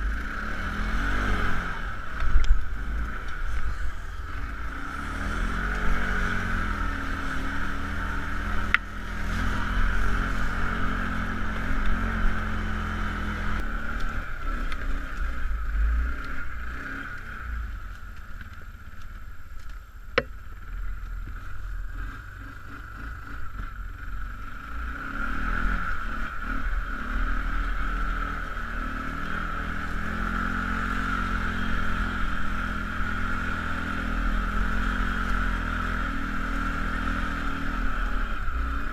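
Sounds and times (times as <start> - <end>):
atv engine running: 0.0 - 38.9.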